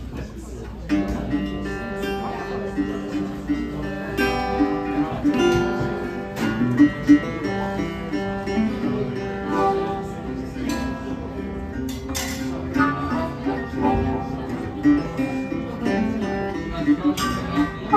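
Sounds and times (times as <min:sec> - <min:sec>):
acoustic guitar strumming: 0:00.9 - 0:17.9.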